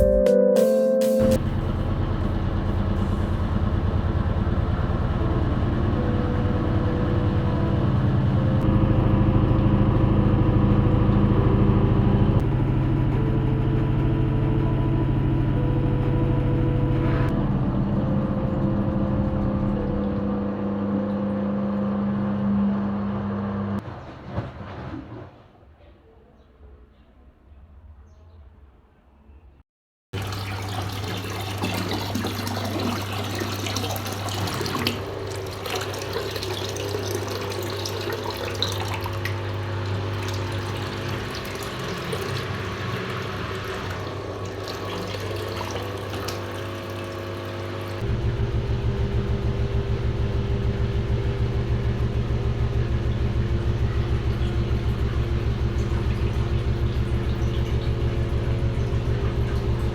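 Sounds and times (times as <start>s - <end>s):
washing machine motor hum: 1.2s - 23.8s, 30.2s - 59.9s
water sloshing in washing machine: 30.2s - 59.9s
drum spinning pulse: 47.6s - 59.9s.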